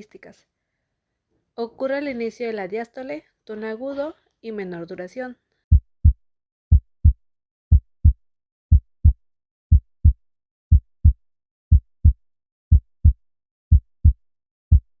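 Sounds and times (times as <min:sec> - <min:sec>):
heartbeat thuds: 0:05.7 - 0:14.9.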